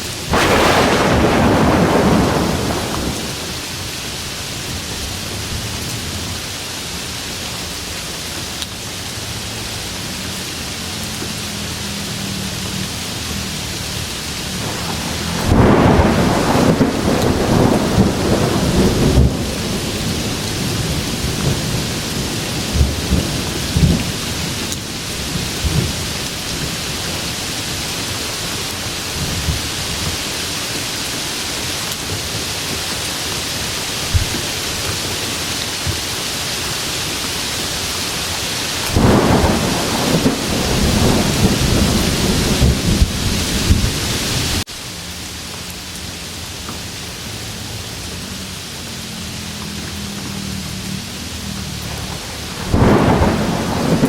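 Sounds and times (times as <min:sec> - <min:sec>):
steady rain: 0:00.0 - 0:54.0
thunder rolling: 0:00.3 - 0:03.9, 0:14.5 - 0:26.8, 0:38.8 - 0:44.6, 0:51.7 - 0:54.0.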